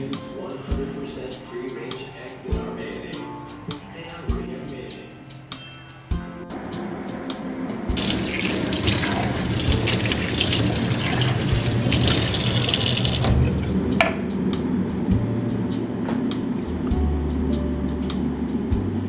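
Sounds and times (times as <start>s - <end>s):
tap water running into sink: 8.0s - 13.5s.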